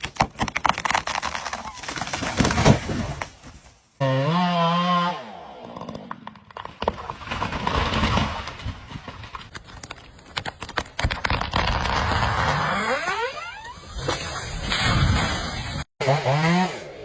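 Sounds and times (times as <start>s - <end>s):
chainsaw cutting with sharp cracks: 0.0s - 3.4s, 4.0s - 8.6s, 16.0s - 17.0s.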